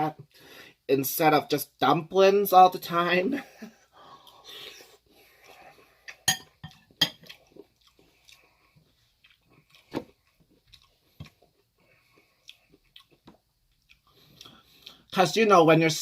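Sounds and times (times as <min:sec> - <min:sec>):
chewing and mouth sounds: 0:04.2 - 0:15.1.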